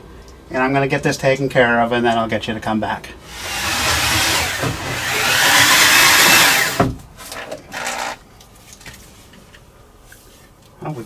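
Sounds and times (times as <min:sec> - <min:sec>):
saw breaking through knock: 0:03.3 - 0:07.0
power drill hole saw grinding: 0:03.3 - 0:08.2.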